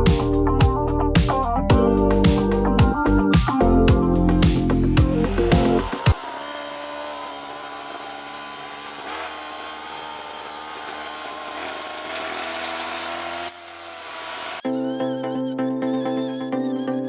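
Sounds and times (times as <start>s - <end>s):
small motor-driven tool running: 5.8s - 15.0s.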